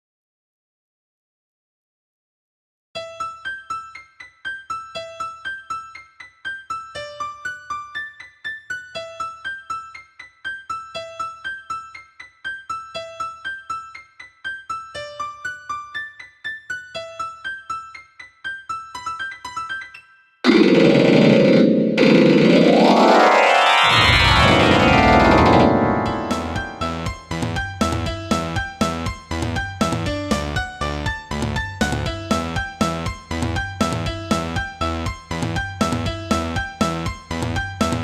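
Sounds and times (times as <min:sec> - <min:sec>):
loud dense wall of midi notes: 0:20.5 - 0:27.2
electric piano ringtone melody: 0:20.5 - 0:28.0.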